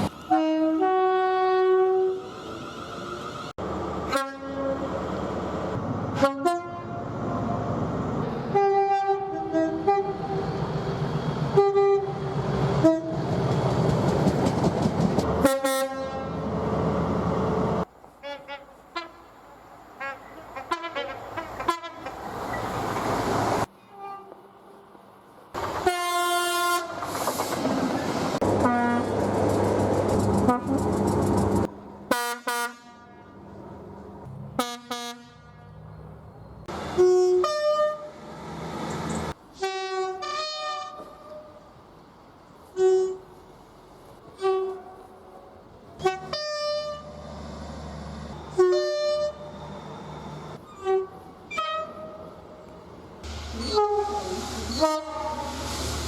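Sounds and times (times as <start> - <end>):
train passing with rail noise: 0.0 - 56.0
train horn toots: 0.3 - 2.2, 4.1 - 4.8, 6.2 - 7.0, 8.5 - 10.4, 11.5 - 12.2, 12.8 - 13.2, 15.4 - 16.4, 18.2 - 19.3, 20.0 - 22.2, 23.9 - 24.4, 25.8 - 27.0, 28.6 - 29.1, 32.1 - 33.4, 34.6 - 35.8, 37.0 - 38.1, 39.6 - 41.6, 42.7 - 43.3, 46.0 - 47.1, 48.5 - 49.6, 50.6 - 52.3, 53.6 - 55.6.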